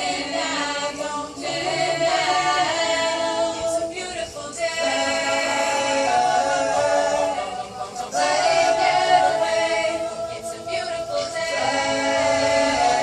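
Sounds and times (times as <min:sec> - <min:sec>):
a cappella choir singing: 0:00.0 - 0:13.0.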